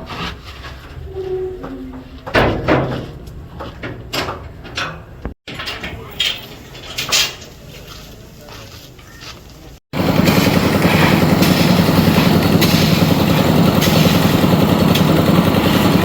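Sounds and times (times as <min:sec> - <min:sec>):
knocks and clattering: 0:01.6 - 0:07.6.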